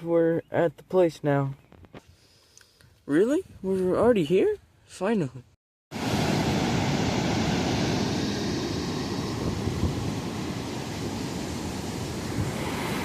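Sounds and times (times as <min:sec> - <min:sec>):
ocean surf: 0:05.9 - 0:13.0
wind buffeting microphone: 0:06.0 - 0:13.0.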